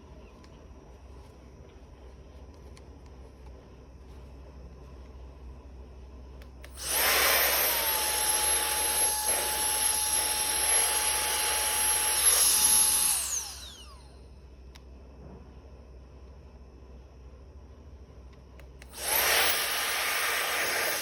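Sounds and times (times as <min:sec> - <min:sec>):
turbo fan whine: 0:00.0 - 0:15.2.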